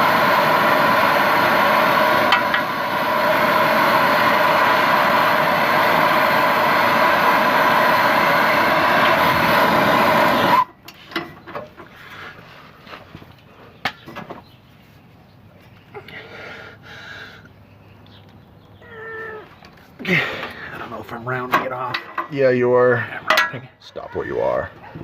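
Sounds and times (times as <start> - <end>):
propane torch flame hissing: 0.0 - 10.7.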